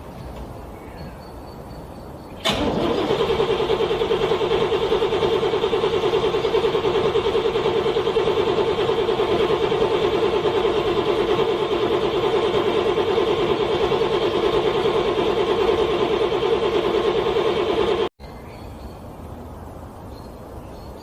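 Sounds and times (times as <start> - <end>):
car engine cranking on starter: 2.4 - 18.1.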